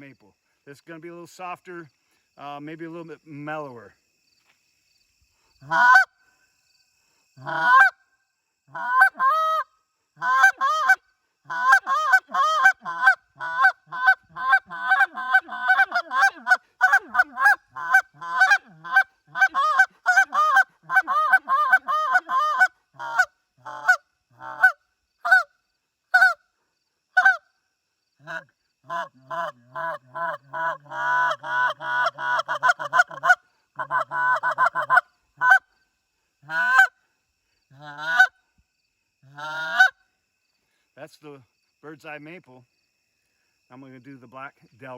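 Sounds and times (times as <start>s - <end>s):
goose call honks and clucks: 5.6s - 6.2s, 7.4s - 8.0s, 8.7s - 25.5s, 26.1s - 26.4s, 27.1s - 27.5s, 28.2s - 35.7s, 36.4s - 37.0s, 37.7s - 38.4s, 39.2s - 40.0s.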